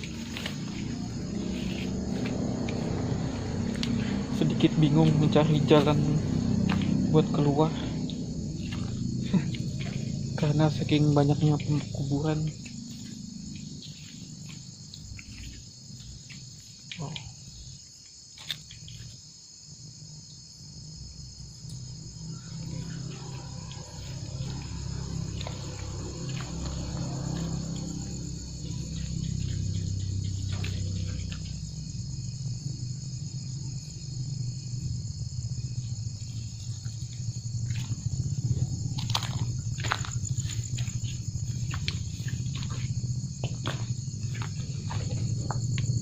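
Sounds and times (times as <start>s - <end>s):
low hum: 0.0s - 14.4s
crickets and insects trilling: 0.0s - 46.0s.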